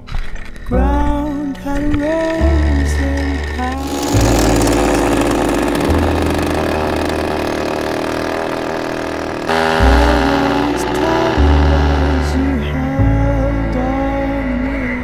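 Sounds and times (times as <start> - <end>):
chainsaw engine running hard: 2.2 - 15.0
music with low bass: 9.5 - 15.0.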